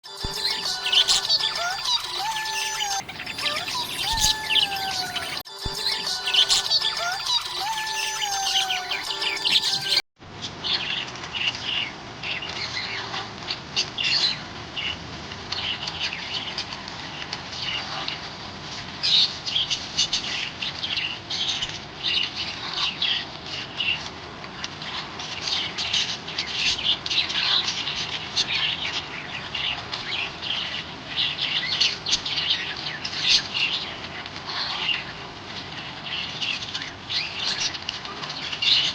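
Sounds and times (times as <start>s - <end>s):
budgerigars chirping and chattering: 0.2s - 10.0s.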